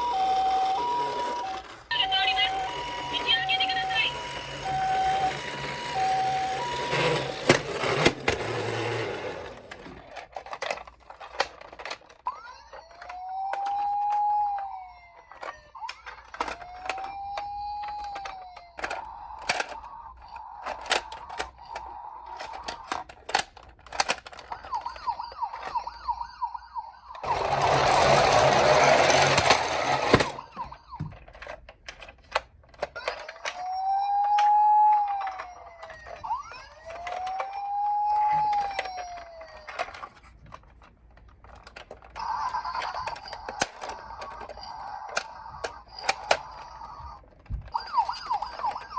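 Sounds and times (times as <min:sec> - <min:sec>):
electronic wailing siren: 0:00.0 - 0:07.4, 0:12.8 - 0:15.8, 0:16.4 - 0:22.7, 0:24.6 - 0:31.1, 0:33.4 - 0:39.8, 0:47.7 - 0:48.9
two-tone toy ambulance siren: 0:00.0 - 0:31.6, 0:33.0 - 0:40.5, 0:41.5 - 0:48.9.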